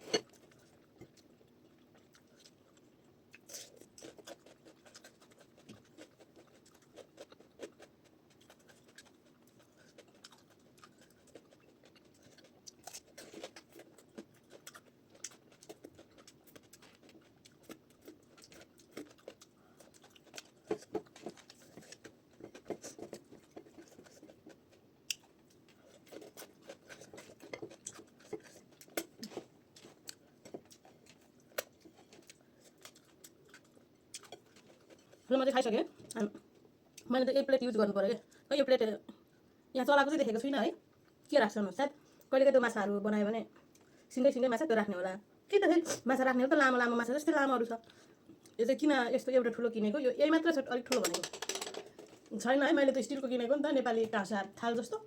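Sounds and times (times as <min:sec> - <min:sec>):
person chewing food: 0:00.0 - 0:35.3.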